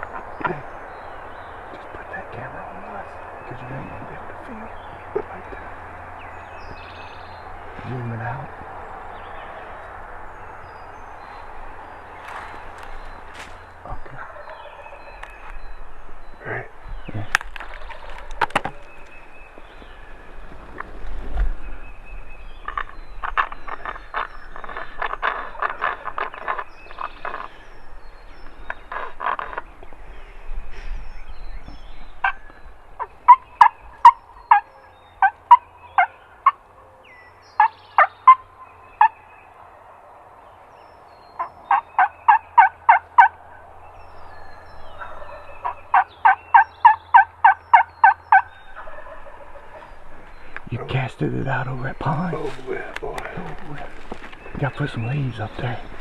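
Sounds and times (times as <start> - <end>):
sharp turkey yelps: 14.2 - 15.2, 22.6 - 27.5, 28.9 - 29.6, 33.0 - 37.0, 37.6 - 39.2, 41.4 - 43.7, 44.8 - 49.9
rapid rattling turkey notes: 22.6 - 27.6.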